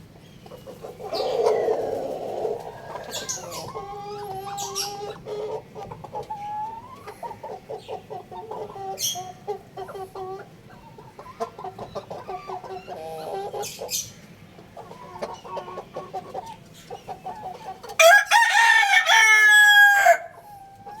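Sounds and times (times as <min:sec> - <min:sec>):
rooster clucking: 0:00.4 - 0:14.0, 0:14.8 - 0:21.0
rooster crowing: 0:01.1 - 0:03.5, 0:18.0 - 0:20.5.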